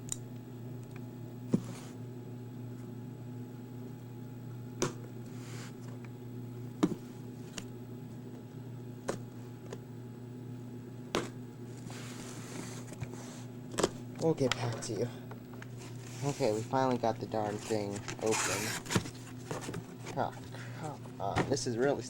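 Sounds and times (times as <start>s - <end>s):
packaging rustling: 15.7s - 21.0s.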